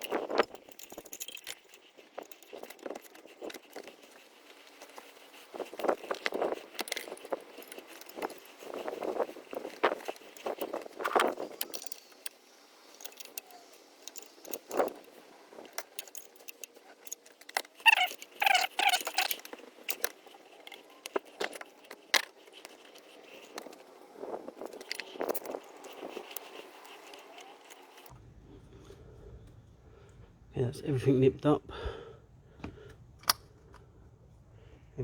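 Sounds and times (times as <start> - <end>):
hand tools clinking on metal: 0.0 - 28.1
brief squeak: 17.8 - 19.4.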